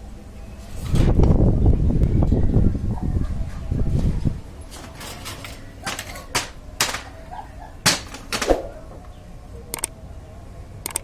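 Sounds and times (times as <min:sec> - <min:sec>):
tools and metal parts clicking: 0:04.7 - 0:08.6.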